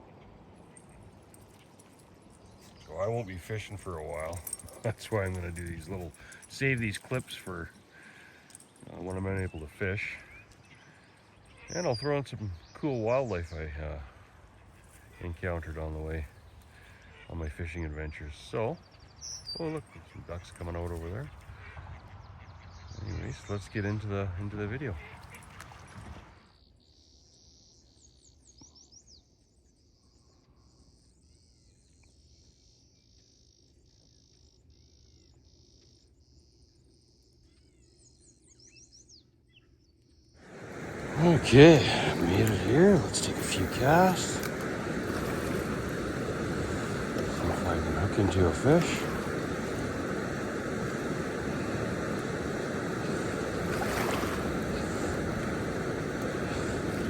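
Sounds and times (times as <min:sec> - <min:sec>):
insects chirping: 0:00.0 - 0:21.2, 0:40.2 - 0:57.0
high falling bird chirps: 0:36.3 - 0:57.0
river current rushing: 0:40.4 - 0:57.0.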